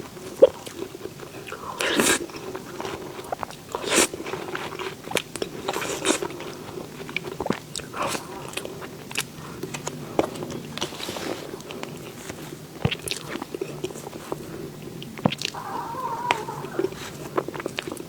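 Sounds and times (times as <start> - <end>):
biting and chewing: 0.0 - 18.0
mouth clicks and smacks: 11.6 - 18.0.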